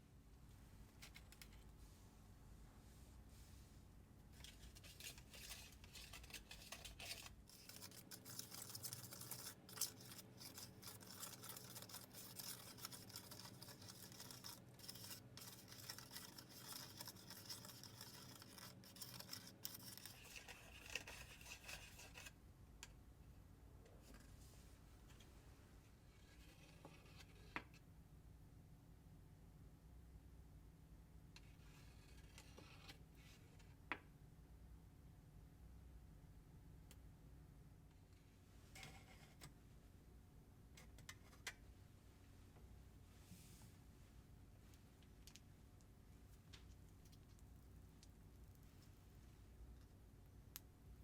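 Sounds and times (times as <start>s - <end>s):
plastic spoon scraping a tray: 4.4s - 22.4s.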